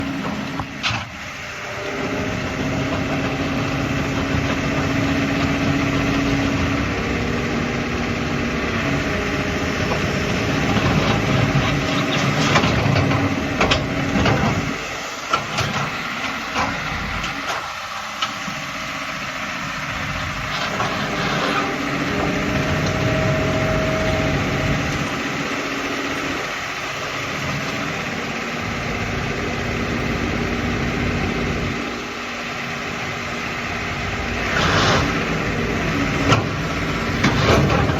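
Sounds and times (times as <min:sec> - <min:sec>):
excavator diesel engine: 0:00.0 - 0:37.9.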